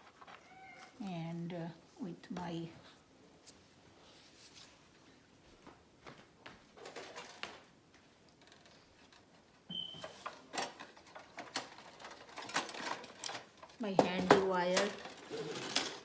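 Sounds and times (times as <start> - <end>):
clicks and rustles of handling: 0.0 - 1.0, 5.6 - 16.0.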